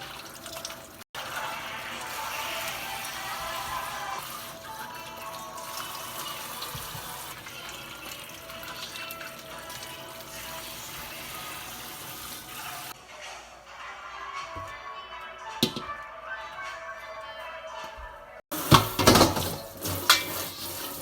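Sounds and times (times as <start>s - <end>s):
tap water running into sink: 0.0s - 13.0s, 18.5s - 21.0s
background music: 1.2s - 20.6s.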